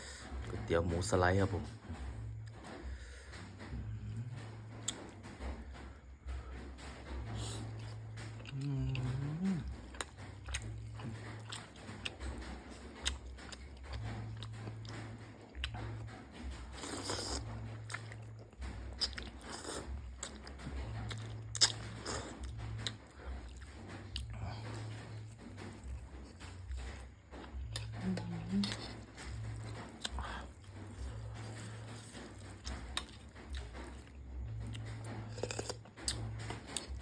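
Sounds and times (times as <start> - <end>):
low hum: 0.0 - 37.0
person chewing and biting: 7.3 - 37.0.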